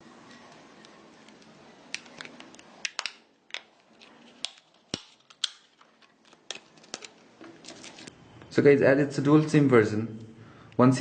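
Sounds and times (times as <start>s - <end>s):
plastic clicks and snaps: 4.4s - 7.2s.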